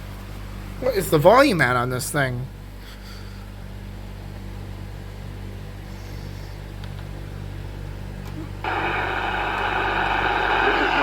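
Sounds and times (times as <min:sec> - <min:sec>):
low electrical hum: 0:00.0 - 0:11.0
faint hiss: 0:08.6 - 0:11.0.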